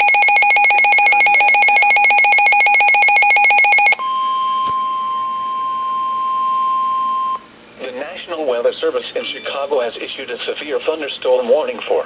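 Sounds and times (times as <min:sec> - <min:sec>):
two-tone warble alert: 0:00.0 - 0:04.0
steady alarm tone: 0:00.0 - 0:04.4.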